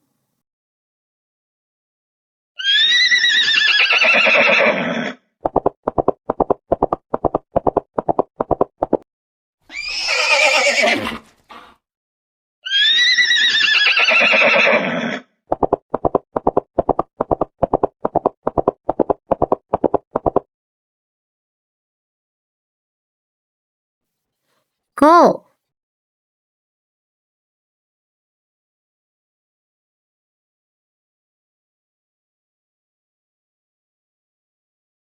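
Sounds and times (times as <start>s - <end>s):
horse whinnying: 2.6s - 5.2s, 9.7s - 11.7s, 12.6s - 15.3s.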